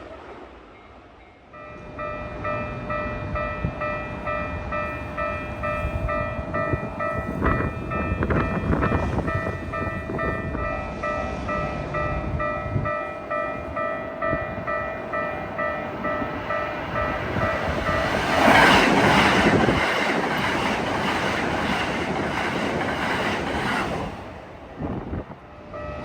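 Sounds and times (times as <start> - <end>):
train rumbling through: 0.0 - 26.0
level-crossing warning bell: 0.8 - 21.8, 25.4 - 26.0
train wheel clatter: 12.9 - 24.3.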